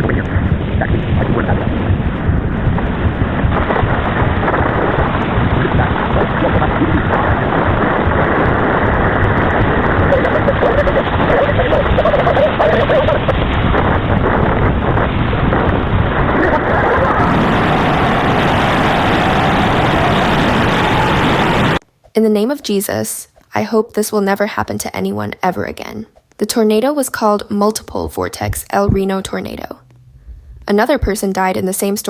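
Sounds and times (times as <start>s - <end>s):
wind blasting microphone: 0.0s - 21.8s, 28.0s - 31.6s.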